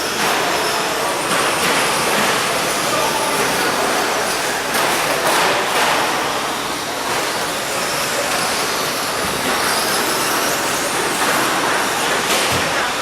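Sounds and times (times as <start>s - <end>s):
rc truck motors and tyres: 7.1s - 12.2s.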